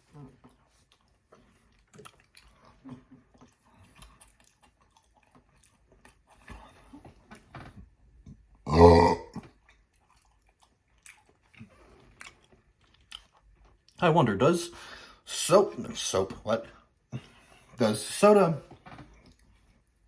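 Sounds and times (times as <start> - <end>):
chewing and mouth sounds: 0.0 - 14.0, 18.7 - 20.0
man burping loudly: 8.6 - 9.5.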